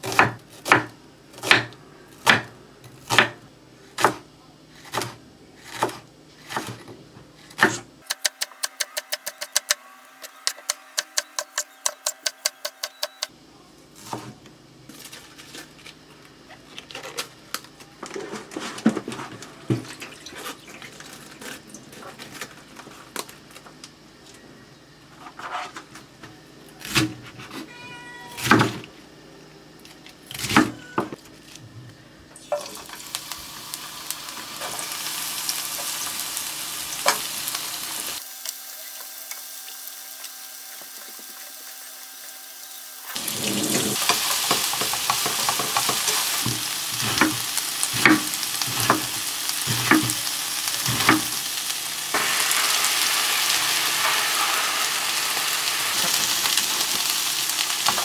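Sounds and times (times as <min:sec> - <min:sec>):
food sizzling in a pan: 0:32.5 - 0:58.0.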